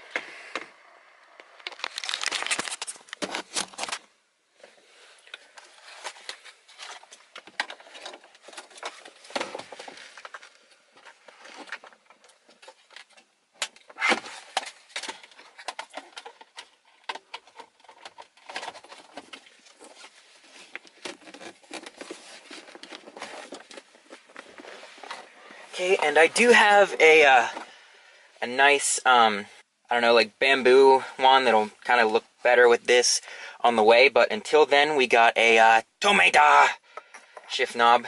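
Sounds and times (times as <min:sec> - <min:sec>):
plastic parts clattering: 0:01.4 - 0:04.1, 0:05.5 - 0:26.0
plastic parts clicking and rattling: 0:01.4 - 0:04.1, 0:05.5 - 0:25.3.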